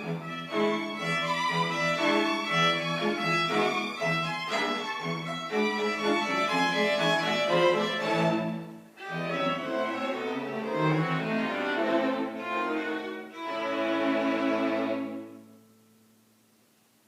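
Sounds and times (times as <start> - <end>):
string quartet playing: 0.0 - 15.6.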